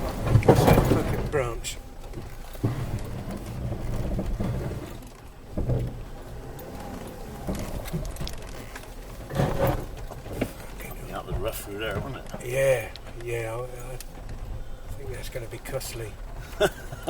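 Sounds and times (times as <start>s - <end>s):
car body and suspension knocks: 0.0s - 1.4s
car engine running under load: 0.0s - 17.0s.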